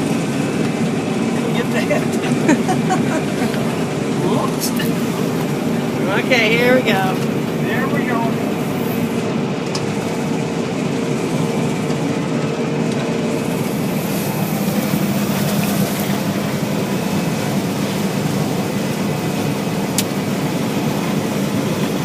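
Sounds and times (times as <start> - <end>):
combine harvester drone: 0.0 - 22.0.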